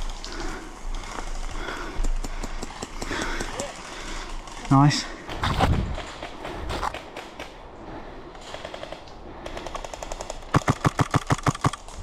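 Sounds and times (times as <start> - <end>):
airsoft gun firing bursts: 8.6 - 11.9.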